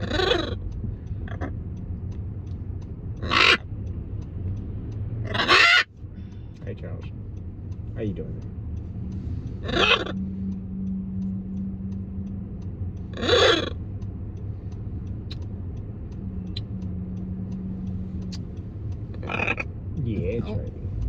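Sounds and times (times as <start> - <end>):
macaw squawking: 0.0 - 1.6, 3.2 - 3.7, 5.2 - 5.9, 9.5 - 10.4, 13.1 - 13.8, 17.6 - 19.8
faint regular ticking: 0.0 - 21.0.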